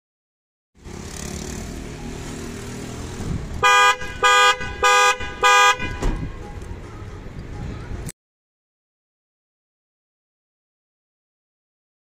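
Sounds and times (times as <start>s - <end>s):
outdoor background noise: 0.8s - 8.2s
pickup horn toots: 3.6s - 6.5s.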